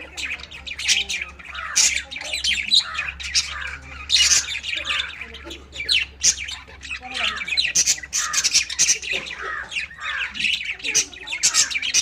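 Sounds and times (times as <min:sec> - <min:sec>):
birds chattering: 0:00.0 - 0:12.0.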